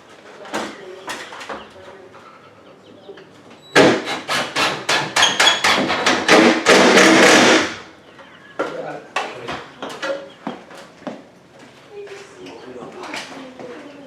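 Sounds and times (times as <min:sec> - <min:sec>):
rapid loud knocking: 0:03.8 - 0:07.9.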